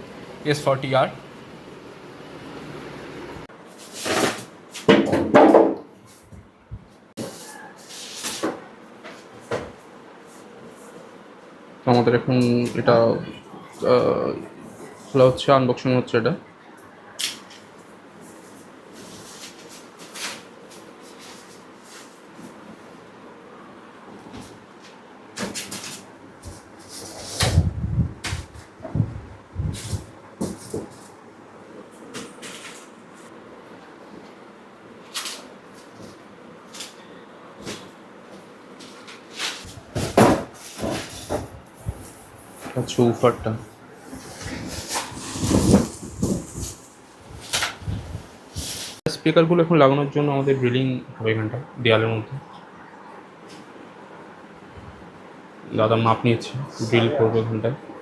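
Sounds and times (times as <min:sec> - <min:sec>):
box knocks and scrapes: 0:44.4 - 0:46.8.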